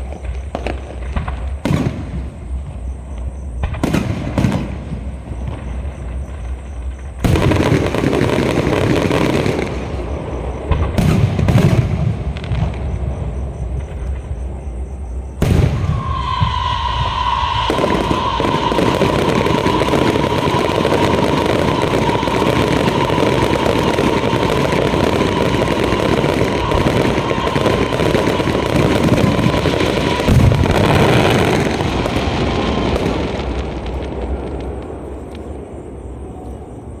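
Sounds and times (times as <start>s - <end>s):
firework bang: 0.0s - 2.9s, 3.6s - 14.4s, 15.3s - 35.7s
fireworks crackling and popping: 0.0s - 35.9s
high whistle-like tone: 15.8s - 31.8s.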